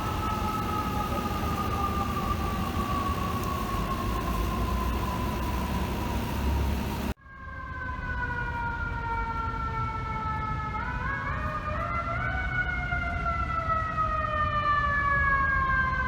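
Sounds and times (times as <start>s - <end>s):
low engine rumble: 0.0s - 7.2s
fire truck siren falling wail: 0.0s - 16.0s.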